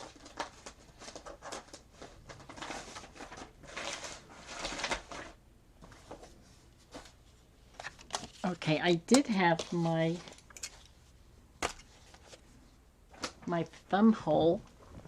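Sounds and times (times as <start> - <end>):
paper rustling: 0.0 - 8.6, 9.4 - 10.9.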